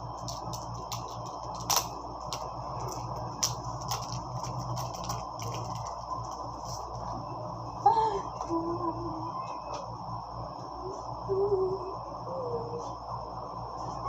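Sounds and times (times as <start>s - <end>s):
background hiss and hum: 0.0s - 14.0s
paper and plastic crinkling: 0.2s - 7.1s.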